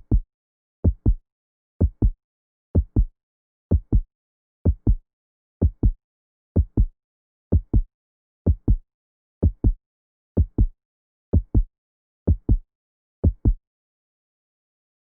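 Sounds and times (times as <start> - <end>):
heartbeat lub-dub: 3.7 - 4.1, 9.4 - 9.8.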